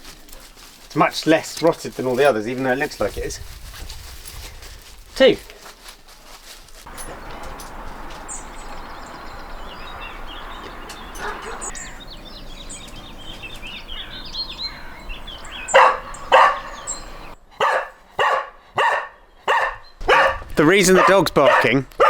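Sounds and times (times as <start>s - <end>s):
birds chirping: 6.9s - 22.0s
dog barking: 11.2s - 11.8s, 15.7s - 16.9s, 17.6s - 21.8s.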